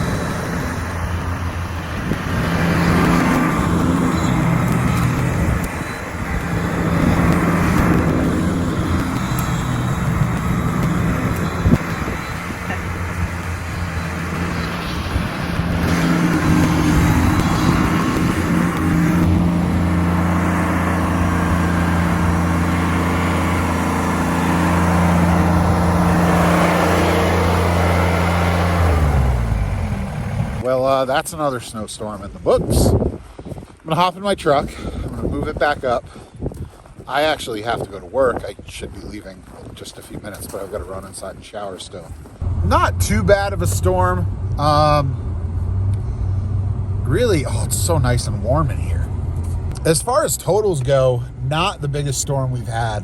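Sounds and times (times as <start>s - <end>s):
tractor diesel engine running: 0.0s - 30.6s, 42.2s - 53.0s.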